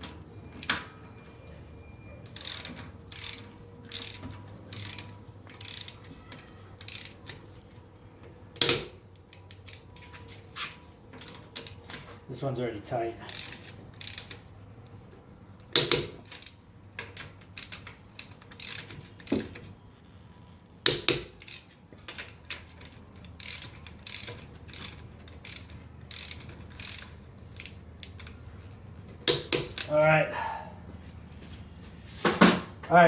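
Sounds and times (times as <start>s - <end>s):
loud sharp wrench clicks: 2.3s - 7.4s, 8.6s - 9.9s, 13.3s - 14.4s, 15.7s - 19.4s, 20.8s - 28.4s, 29.2s - 29.9s
torque wrench ratcheting: 2.3s - 7.4s, 13.2s - 14.5s, 15.7s - 19.4s, 20.8s - 28.4s.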